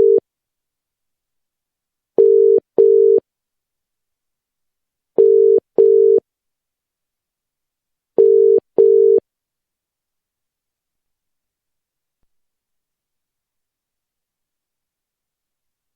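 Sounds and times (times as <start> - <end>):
telephone ringing tone: 0.0 - 0.2, 2.2 - 3.2, 5.2 - 6.2, 8.2 - 9.2.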